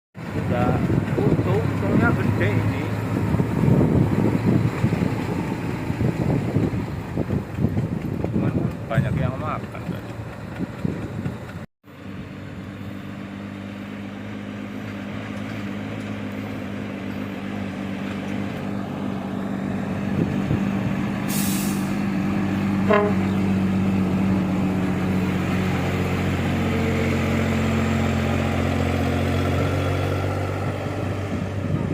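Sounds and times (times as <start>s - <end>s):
diesel truck engine running: 0.2s - 31.9s
short hiss: 21.3s - 22.0s.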